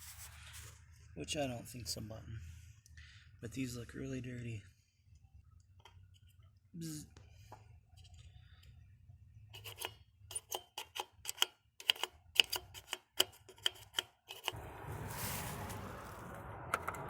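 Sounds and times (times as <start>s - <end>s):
clicking scrapes of plastic connector: 9.6s - 14.6s
steady rushing noise: 14.6s - 17.0s.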